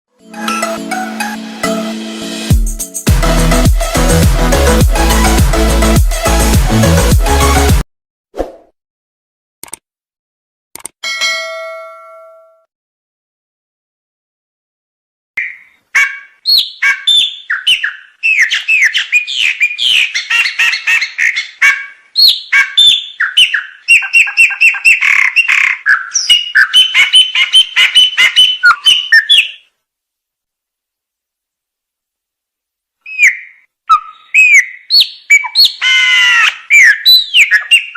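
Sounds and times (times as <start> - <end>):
songbird singing: 15.4 - 29.7, 33.0 - 37.9.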